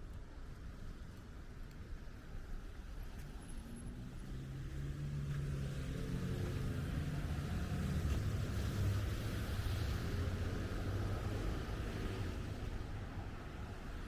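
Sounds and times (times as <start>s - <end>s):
vehicle engine approaching: 3.7s - 12.5s.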